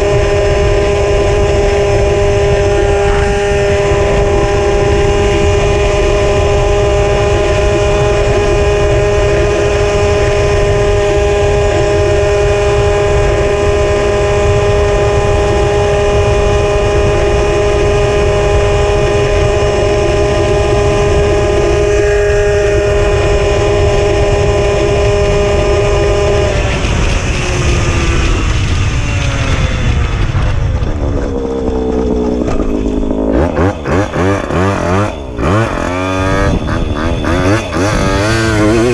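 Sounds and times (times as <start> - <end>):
moped two-stroke engine running: 0.0 - 38.9
wind rumble on microphone: 0.0 - 38.9.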